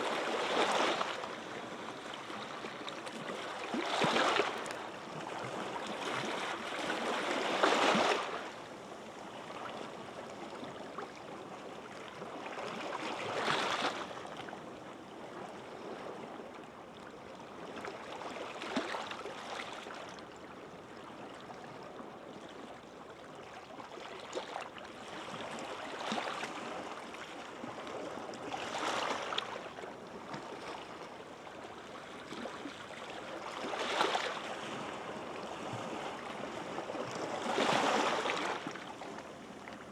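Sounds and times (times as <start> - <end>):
small waves breaking on beach: 0.0 - 8.6, 23.9 - 39.9.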